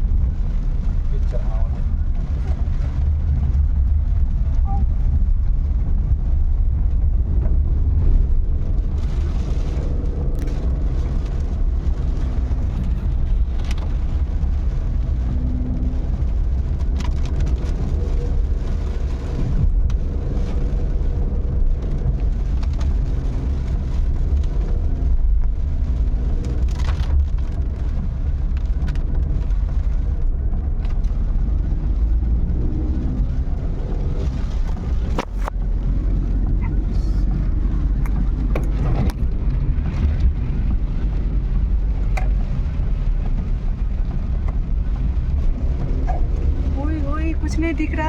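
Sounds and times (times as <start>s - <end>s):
car engine and road rumble: 0.0s - 48.0s.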